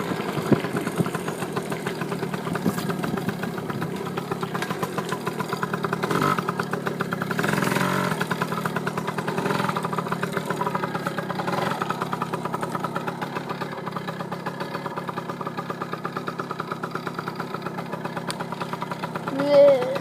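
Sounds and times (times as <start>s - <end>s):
dirt bike engine running: 0.0s - 20.0s.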